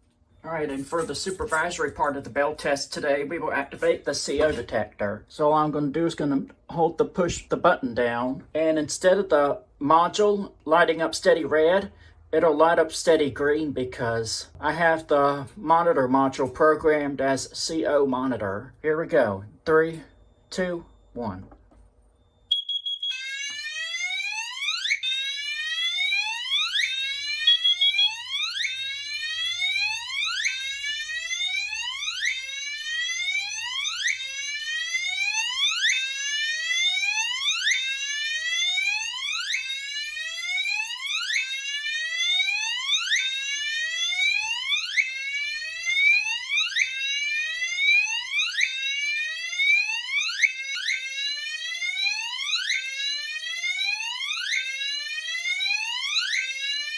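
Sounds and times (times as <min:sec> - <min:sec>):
alarm whoop tone sweeping up: 0:26.8 - 0:28.3.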